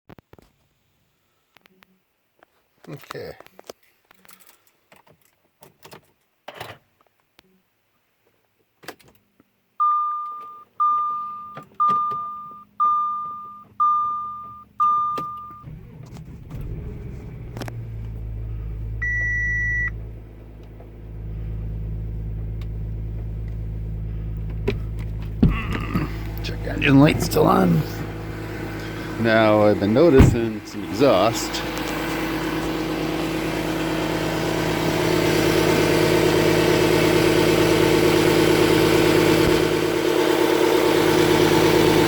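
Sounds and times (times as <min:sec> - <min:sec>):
high beep: 0:09.8 - 0:15.6, 0:19.0 - 0:20.0
dashboard warning chimes: 0:09.8 - 0:15.8, 0:19.0 - 0:20.0, 0:26.4 - 0:31.8
diesel engine starting and idling: 0:13.8 - 0:42.0.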